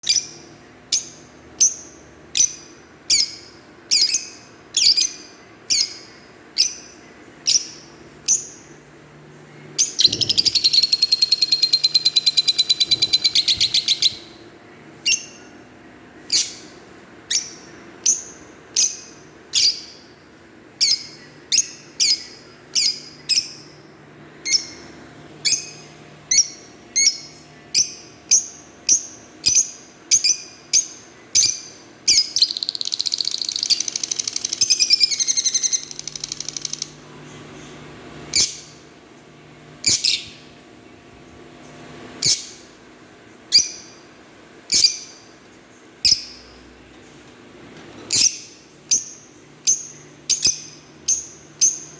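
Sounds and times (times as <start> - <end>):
lovebirds chirping: 0.0 - 20.2, 20.8 - 38.8
lovebirds chattering trill: 9.6 - 15.6, 20.8 - 38.8.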